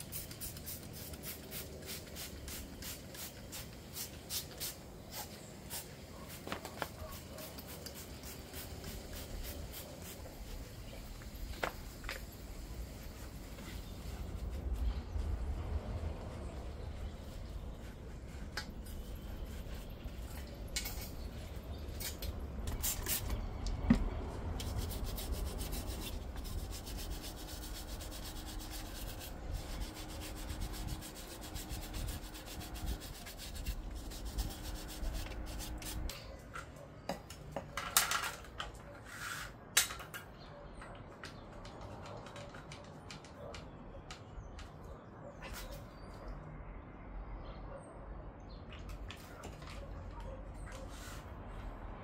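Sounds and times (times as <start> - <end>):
tools scraping on car parts: 37.7 - 40.3.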